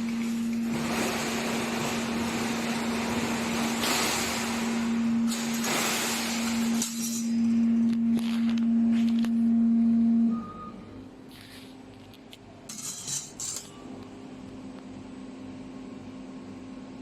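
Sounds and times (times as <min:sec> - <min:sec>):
laser cutting machine hum: 0:00.0 - 0:11.3.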